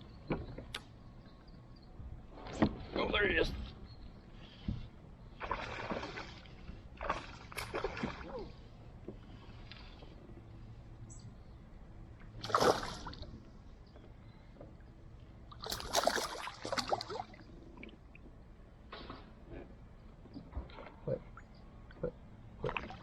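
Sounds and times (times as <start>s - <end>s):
fish splashing in water: 5.4s - 6.4s, 12.4s - 13.2s, 15.5s - 17.5s.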